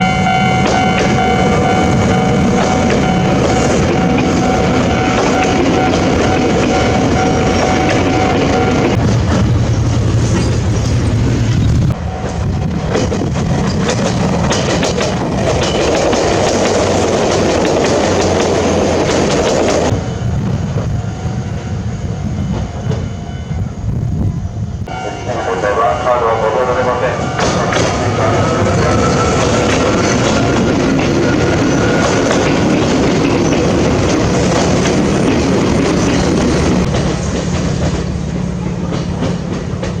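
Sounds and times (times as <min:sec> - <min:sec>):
low train rumble: 0:00.0 - 0:40.0
train wheels clattering over rail joints: 0:02.2 - 0:19.9, 0:27.4 - 0:40.0.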